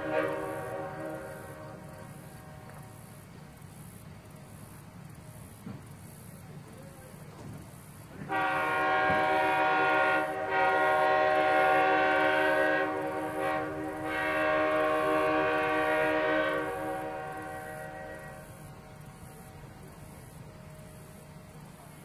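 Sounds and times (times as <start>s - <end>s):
air horn blast: 0.0s - 3.0s, 8.3s - 18.7s.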